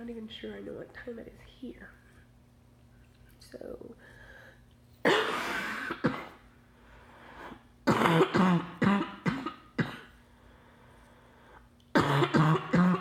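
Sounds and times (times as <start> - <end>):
woman coughing: 5.0 - 6.4, 7.9 - 10.2, 12.0 - 13.0.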